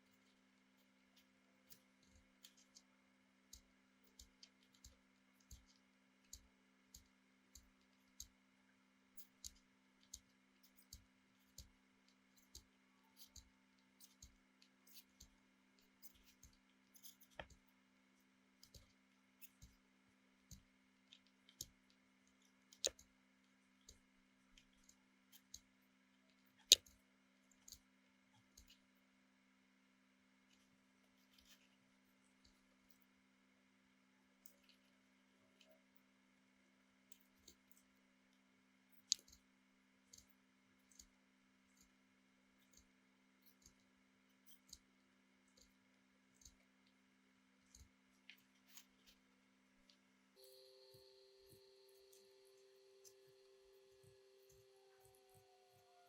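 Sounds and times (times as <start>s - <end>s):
small sharp clicks and taps: 0.0s - 8.4s, 9.1s - 29.0s, 30.5s - 33.1s, 37.1s - 39.5s, 40.1s - 42.0s, 42.6s - 47.0s, 47.6s - 49.2s
faint steady hum: 0.0s - 56.0s.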